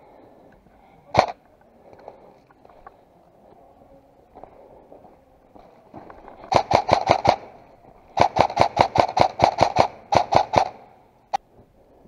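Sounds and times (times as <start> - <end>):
airsoft rifle firing bursts: 6.5 - 7.6, 8.2 - 10.9.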